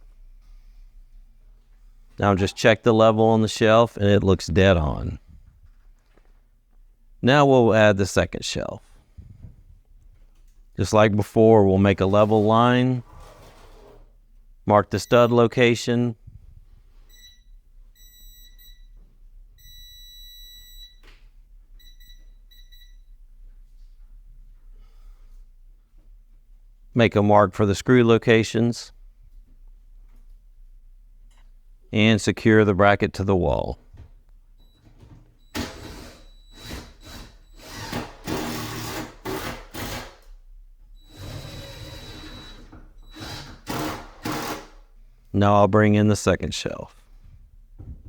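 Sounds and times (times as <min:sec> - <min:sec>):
stud finder beeping: 0:14.9 - 0:15.5, 0:41.0 - 0:43.2
power drill driving screws: 0:35.5 - 0:40.3, 0:41.1 - 0:44.8.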